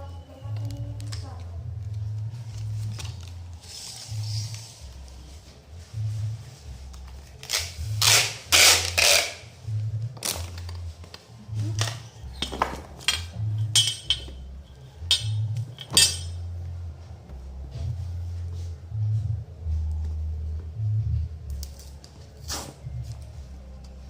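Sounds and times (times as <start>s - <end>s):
background music with bass line: 0.0s - 24.0s
hard objects clinking and knocking: 10.2s - 16.5s.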